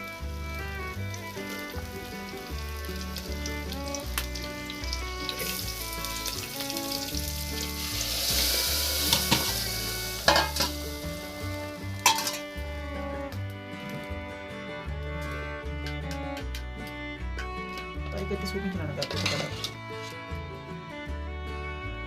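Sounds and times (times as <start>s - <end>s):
curry sizzling in a pot: 0.0s - 13.0s
background music: 0.0s - 22.0s
spoon clinking against pot: 10.2s - 10.8s, 12.0s - 12.5s.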